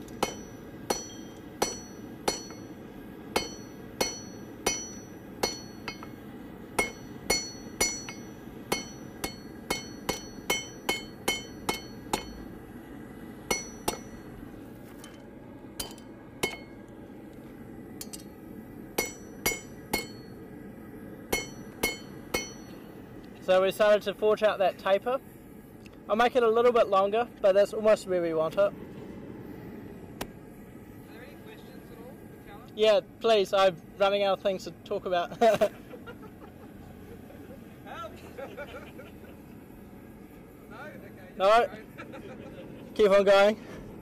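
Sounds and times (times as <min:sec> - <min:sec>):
hammer striking steel on anvil: 0:00.0 - 0:06.2, 0:06.8 - 0:12.5, 0:13.5 - 0:14.3, 0:15.8 - 0:16.8, 0:18.0 - 0:18.4, 0:19.0 - 0:20.4, 0:21.3 - 0:22.9.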